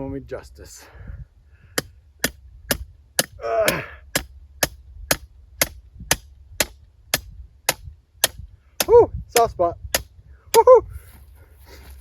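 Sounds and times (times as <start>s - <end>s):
hammer striking fence post: 1.8s - 10.1s
person grunting: 3.4s - 4.0s.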